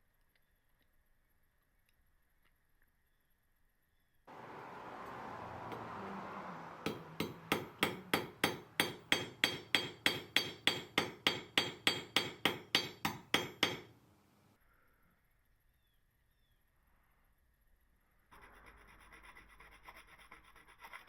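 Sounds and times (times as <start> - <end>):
hammer striking metal on anvil: 6.8 - 14.0.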